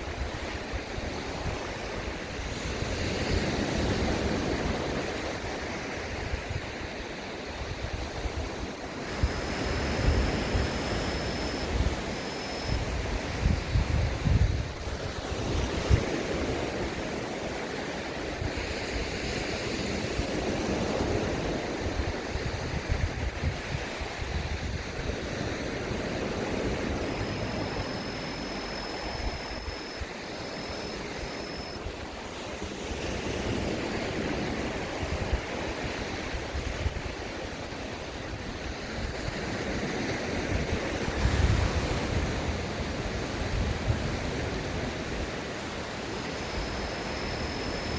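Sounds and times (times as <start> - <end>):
faint high steady tone: 0.0 - 4.0, 8.8 - 15.0, 25.2 - 32.3, 45.7 - 47.9.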